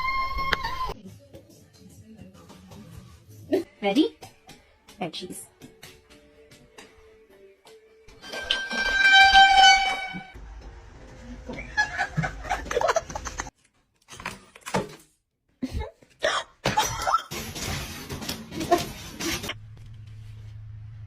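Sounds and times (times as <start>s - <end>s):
loud horn-like honk: 8.2s - 10.4s.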